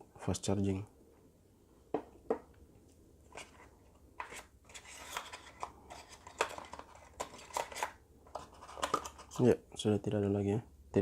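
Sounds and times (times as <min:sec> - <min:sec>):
packaging rustling and clicking: 0:03.3 - 0:09.4.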